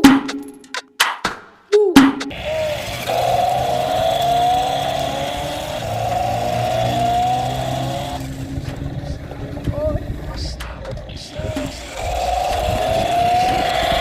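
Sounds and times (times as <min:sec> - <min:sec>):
toy car motor whirring: 0:02.4 - 0:10.2, 0:10.9 - 0:14.0.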